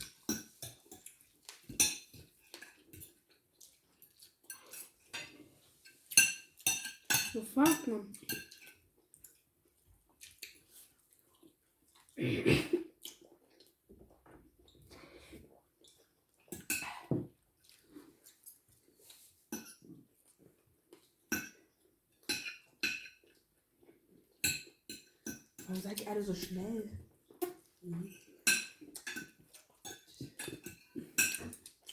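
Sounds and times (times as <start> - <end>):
cutlery clinking on plates: 0.0 - 3.3, 4.5 - 9.4, 16.5 - 17.4, 19.5 - 19.8, 21.3 - 21.6, 22.2 - 23.4, 24.4 - 25.8, 27.4 - 31.9.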